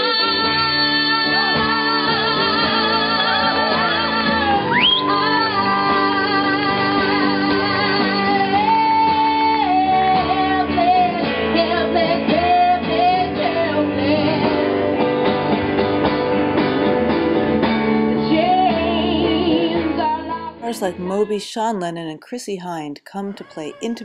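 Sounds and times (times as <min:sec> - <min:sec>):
person singing slow melody: 0:00.0 - 0:14.8
guitar accompaniment: 0:00.0 - 0:24.0.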